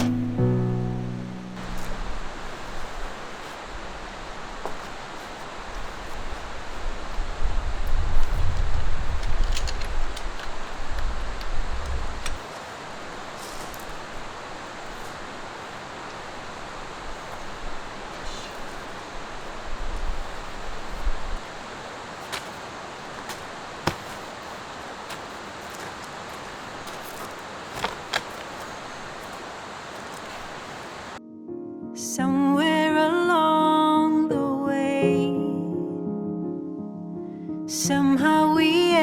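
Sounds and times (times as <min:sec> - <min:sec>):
stream flowing over rocks: 0:10.8 - 0:31.2.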